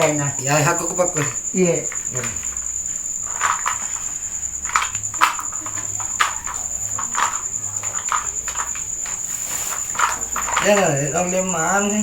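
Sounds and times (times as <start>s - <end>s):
crickets trilling: 0.0s - 12.0s
soft scuffing noises: 8.3s - 10.7s.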